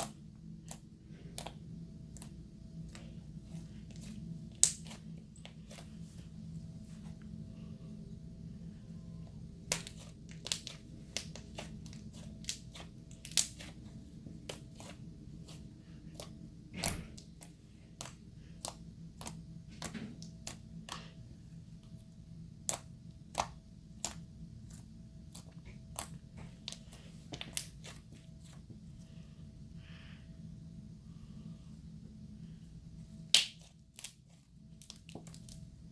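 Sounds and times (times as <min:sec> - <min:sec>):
steady low hum: 0:00.0 - 0:35.9
slime squished by hand: 0:09.6 - 0:21.1, 0:33.3 - 0:35.6.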